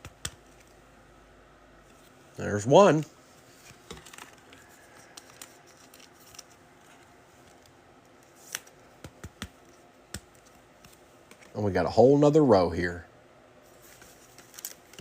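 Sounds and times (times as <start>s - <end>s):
card packs rustling: 3.4s - 11.6s, 13.7s - 15.0s.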